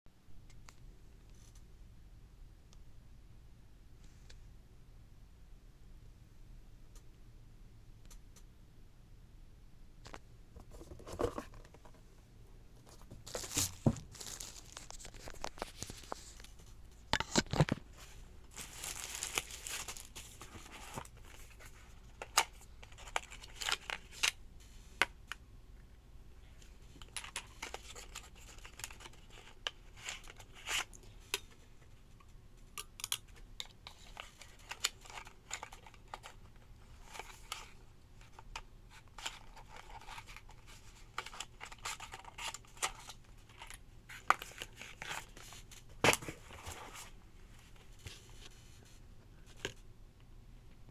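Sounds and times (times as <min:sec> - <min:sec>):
packaging tearing and crinkling: 0:13.2 - 0:16.4, 0:18.5 - 0:21.0.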